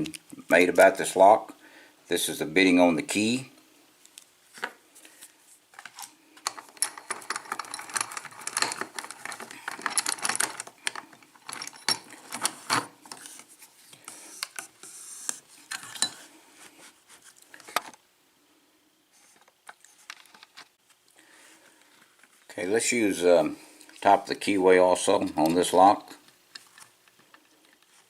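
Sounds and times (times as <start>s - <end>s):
metal lock parts clicking and rattling: 5.8s - 12.9s.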